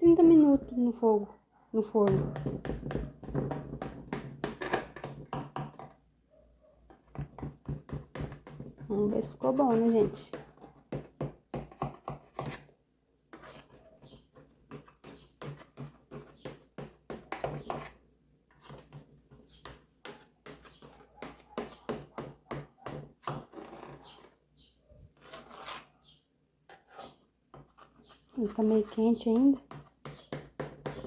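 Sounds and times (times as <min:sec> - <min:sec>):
knife cutting cake in a pan: 0:06.9 - 0:12.7, 0:13.3 - 0:24.4, 0:25.1 - 0:31.0.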